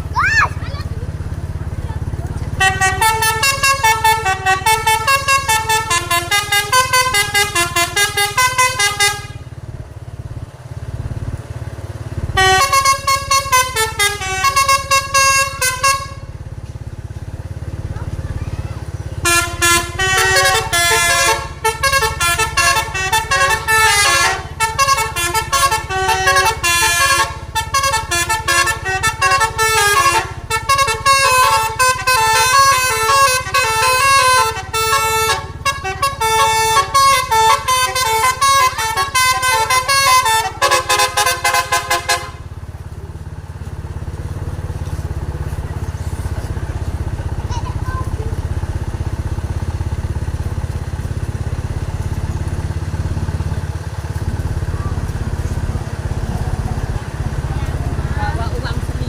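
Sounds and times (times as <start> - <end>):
bus engine running: 0.0 - 59.0
multi-tone air horn tune: 2.5 - 9.6, 12.2 - 17.8, 19.0 - 45.7.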